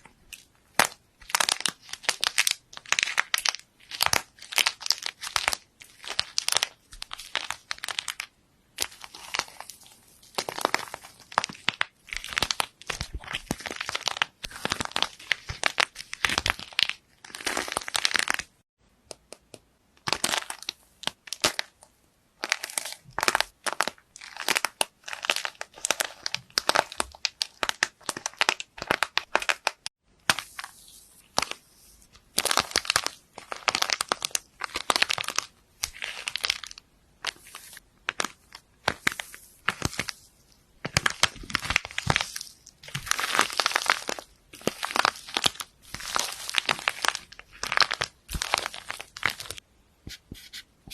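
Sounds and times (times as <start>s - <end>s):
crunchy slime crackling: 0.0s - 18.6s, 20.0s - 21.8s, 22.4s - 49.6s.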